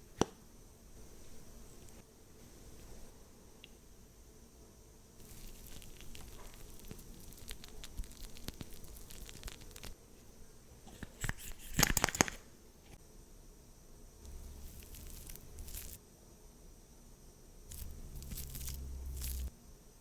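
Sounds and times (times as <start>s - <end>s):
soft crackly scratching: 5.2s - 10.3s, 14.2s - 16.0s, 17.7s - 19.5s.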